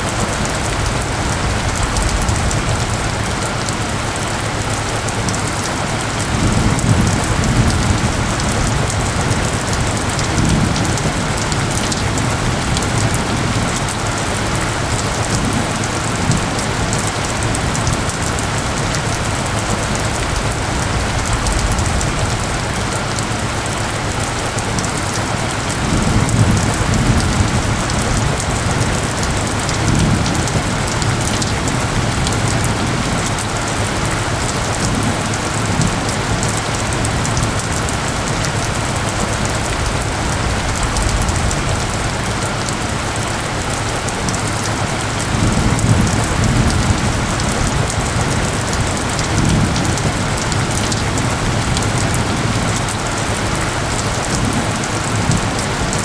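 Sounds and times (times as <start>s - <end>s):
steady rain: 0.0s - 56.0s
low rumbles: 36.8s - 44.4s.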